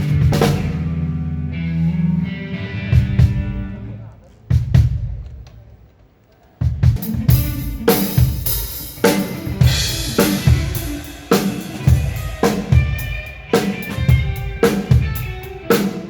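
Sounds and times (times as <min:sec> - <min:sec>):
cymbals ringing: 0:07.4 - 0:16.0.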